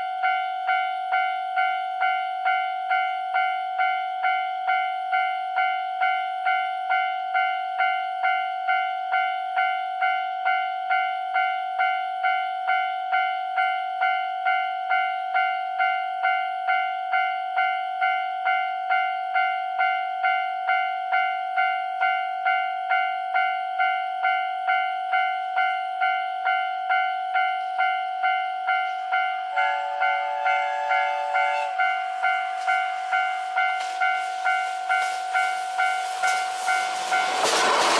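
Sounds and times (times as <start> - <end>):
railroad crossing bell ringing: 0.0 - 37.9
train horn: 28.8 - 37.9.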